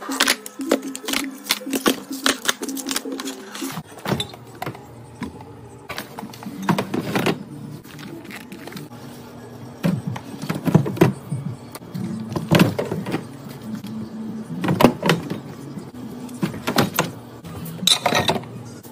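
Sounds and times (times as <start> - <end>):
groceries being handled and set down: 0.0 - 14.0.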